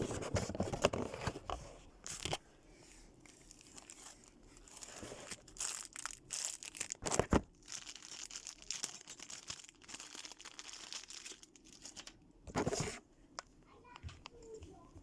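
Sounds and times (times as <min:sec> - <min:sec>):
packaging rustling and crinkling: 0:03.3 - 0:13.0.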